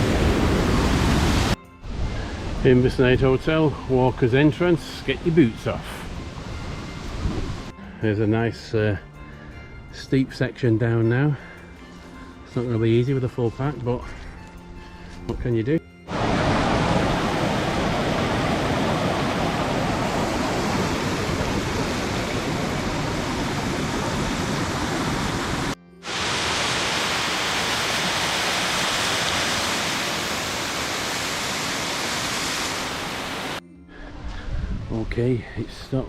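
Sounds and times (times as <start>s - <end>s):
rushing water: 0.0s - 2.8s, 16.1s - 33.6s.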